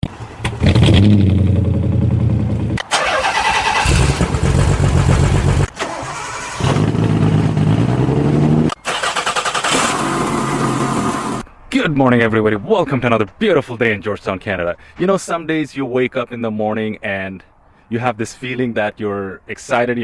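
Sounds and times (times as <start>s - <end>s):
car engine revving: 0.0s - 11.4s.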